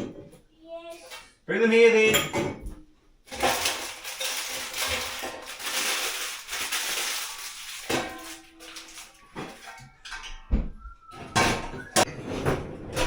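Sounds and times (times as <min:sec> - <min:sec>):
dishes clattering in a sink: 0:00.0 - 0:00.4, 0:02.0 - 0:13.0.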